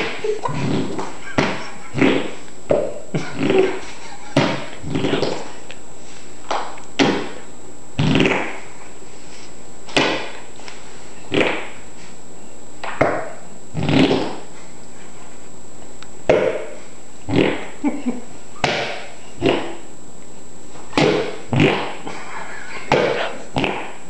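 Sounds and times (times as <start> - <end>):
person making fart noises: 0.0 - 5.6, 6.6 - 7.4, 8.0 - 8.8, 11.3 - 11.9, 12.9 - 14.5, 16.3 - 19.9, 20.9 - 24.0.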